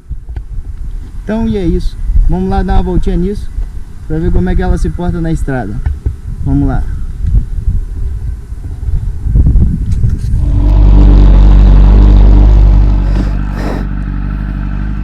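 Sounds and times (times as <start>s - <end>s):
motorcycle engine running: 10.5s - 15.0s.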